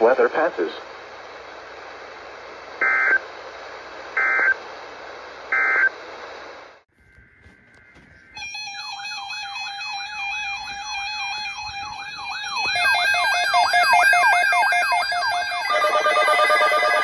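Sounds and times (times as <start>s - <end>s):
electronic siren-like warble: 7.7s - 17.0s.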